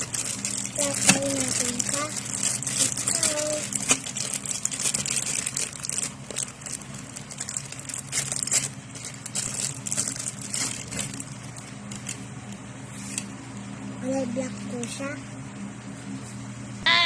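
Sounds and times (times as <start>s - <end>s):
packaging crinkling: 0.0s - 13.2s
steady low hum: 0.0s - 17.0s.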